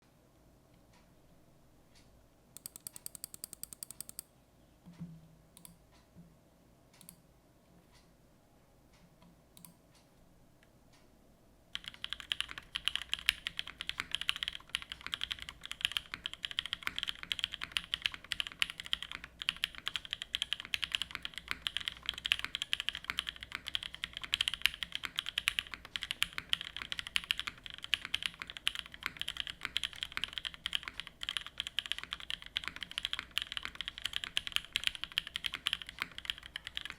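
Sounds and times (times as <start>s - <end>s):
mechanical keyboard typing: 2.6s - 4.2s, 11.8s - 36.9s.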